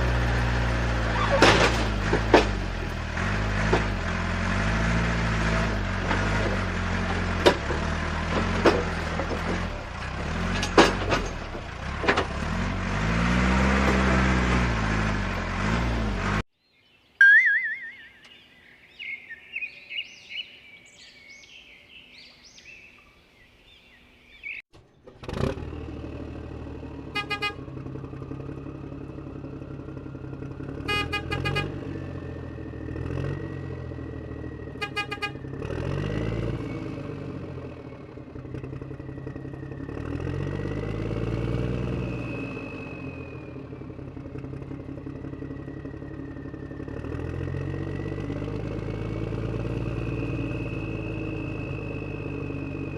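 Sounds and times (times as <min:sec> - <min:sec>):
birds chirping: 0:16.6 - 0:25.1.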